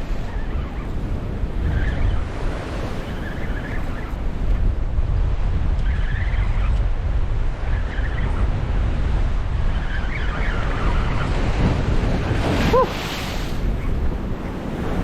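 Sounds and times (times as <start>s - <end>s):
wind buffeting microphone: 0.0s - 15.0s
surf on rocks: 6.8s - 15.0s.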